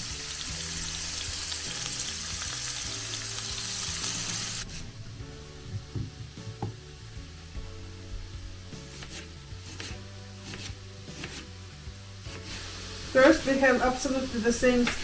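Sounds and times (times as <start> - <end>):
meat sizzling in a frying pan: 0.0 - 4.8, 11.5 - 15.0
faint background music: 0.0 - 15.0.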